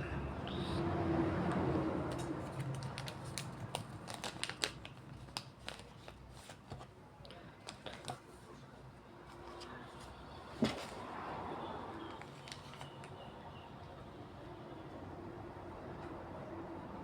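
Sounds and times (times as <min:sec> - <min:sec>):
quick sharp clicks and crinkles: 0:02.1 - 0:06.8.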